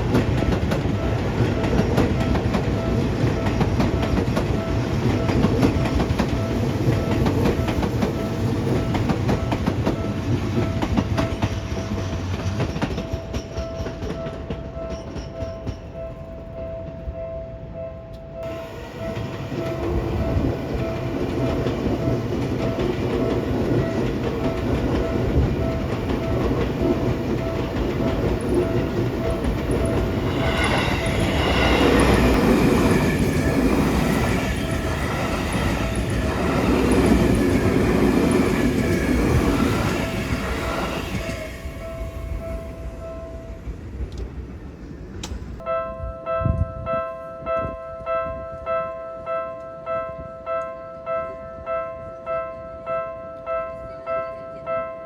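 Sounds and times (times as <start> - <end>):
electric train passing: 0.0 - 45.6
wheels clattering over rail joints: 18.6 - 41.7.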